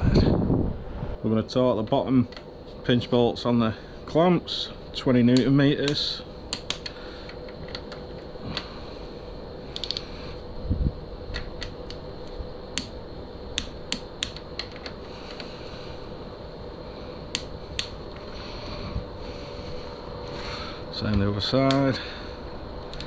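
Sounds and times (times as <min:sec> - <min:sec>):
torque wrench clicks: 0:05.3 - 0:07.0, 0:09.8 - 0:10.1.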